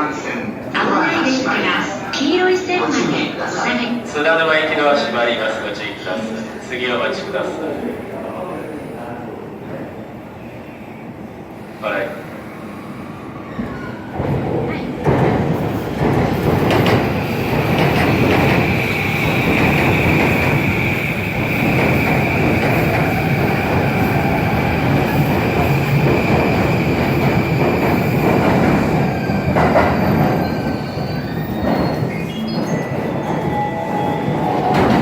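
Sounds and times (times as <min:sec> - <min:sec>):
train wheels rumbling: 0:13.6 - 0:35.0.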